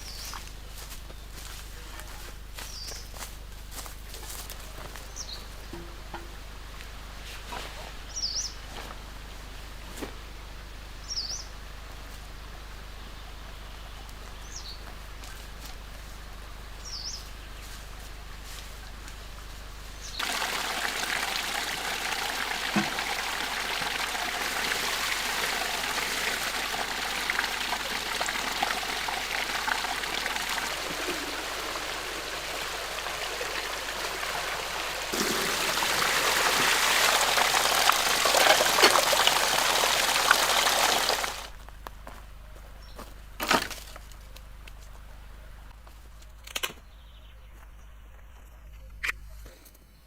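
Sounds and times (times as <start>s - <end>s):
running water splashing: 20.2s - 41.6s.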